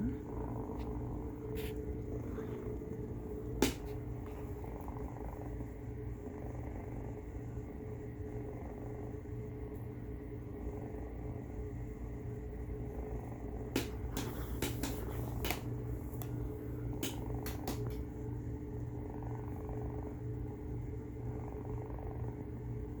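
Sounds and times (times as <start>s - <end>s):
cat purring with rasp: 0.0s - 23.0s
sharp clicks: 17.0s - 18.0s.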